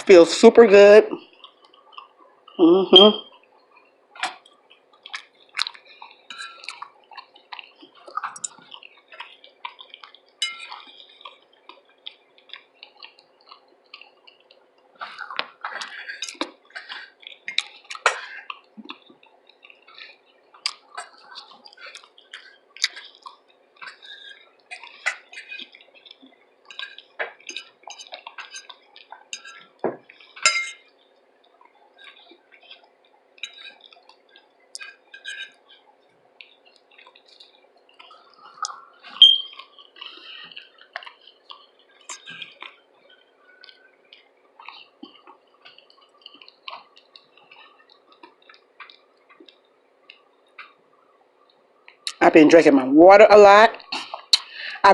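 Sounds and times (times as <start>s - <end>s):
wet chewing and lip smacking: 1.2s - 2.6s, 3.2s - 52.2s, 53.8s - 54.8s.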